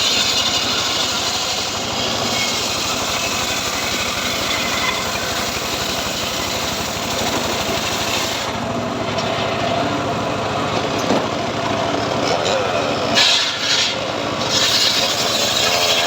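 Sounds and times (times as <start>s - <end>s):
saw blade hissing through wood: 0.0s - 8.6s, 13.1s - 16.0s
sawmill engine running: 0.0s - 16.0s.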